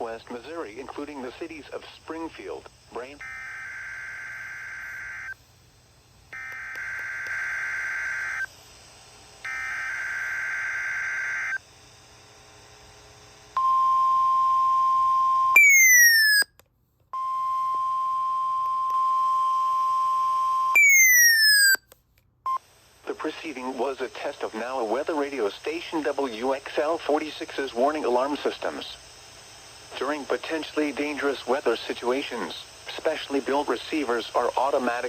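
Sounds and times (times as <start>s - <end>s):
steady warning alarm tone: 3.0s - 5.4s, 6.3s - 8.5s, 9.4s - 11.6s, 13.6s - 16.5s, 19.2s - 21.8s.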